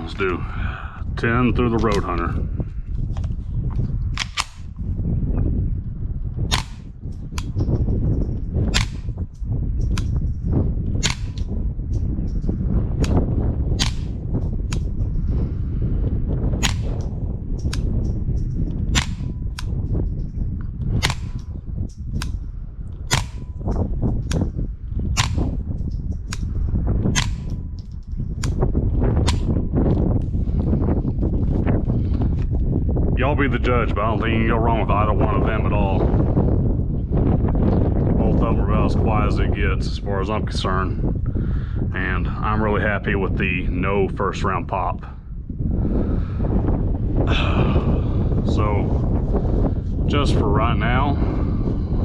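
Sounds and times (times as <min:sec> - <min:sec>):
suppressed gunshots: 0:04.2 - 0:04.8, 0:06.4 - 0:07.8, 0:08.4 - 0:10.2, 0:10.9 - 0:11.7, 0:13.0 - 0:14.9, 0:16.6 - 0:18.2, 0:18.9 - 0:20.0, 0:20.9 - 0:22.4, 0:23.0 - 0:24.6, 0:25.2 - 0:27.6
suppressed rifle shots: 0:08.7 - 0:09.2, 0:11.0 - 0:11.6, 0:13.0 - 0:14.9, 0:16.6 - 0:17.1, 0:18.9 - 0:19.8, 0:21.0 - 0:21.4, 0:23.1 - 0:23.7, 0:25.2 - 0:25.6.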